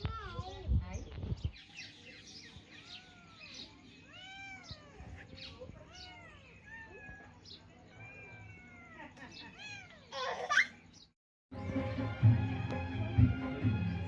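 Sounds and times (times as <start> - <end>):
kittens meowing: 2.7 - 10.7.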